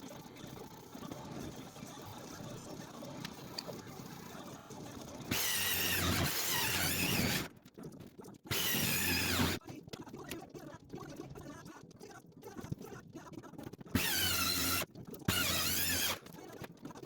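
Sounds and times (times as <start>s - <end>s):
power tool motor hum: 5.3s - 7.5s, 8.5s - 9.6s, 14.0s - 16.2s
power tool squealing: 5.3s - 7.5s, 8.5s - 9.6s, 14.0s - 16.2s.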